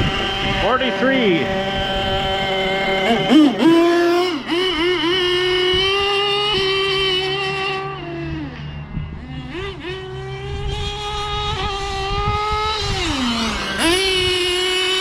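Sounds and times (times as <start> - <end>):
rc car nitro engine whining: 0.0 - 15.0.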